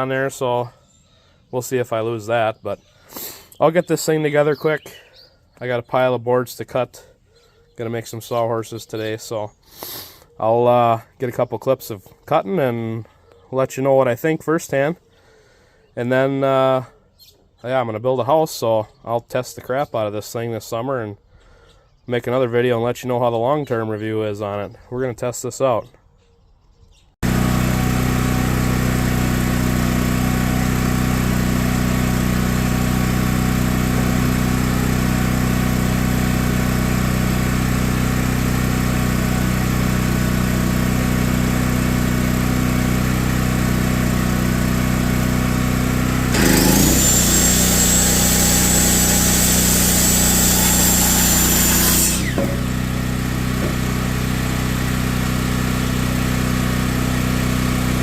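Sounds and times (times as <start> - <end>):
circular saw whining: 45.3 - 54.3.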